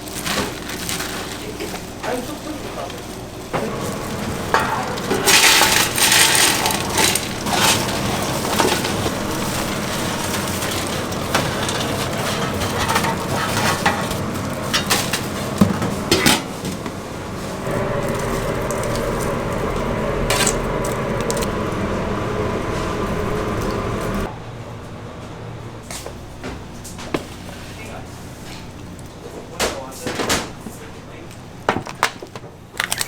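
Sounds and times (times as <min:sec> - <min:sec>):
utensils stirring and clattering: 0:00.2 - 0:24.3
food sizzling: 0:03.6 - 0:24.3.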